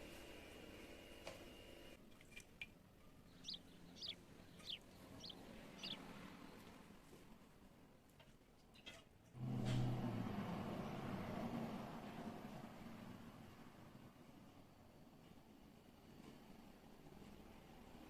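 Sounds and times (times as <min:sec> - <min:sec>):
bird chirping faintly: 0:03.0 - 0:06.8.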